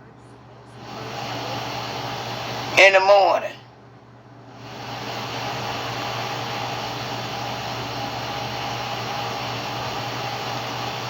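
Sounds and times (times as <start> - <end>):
faint steady hum: 0.0 - 11.0
small blower motor rushing: 0.8 - 2.9, 4.6 - 11.0.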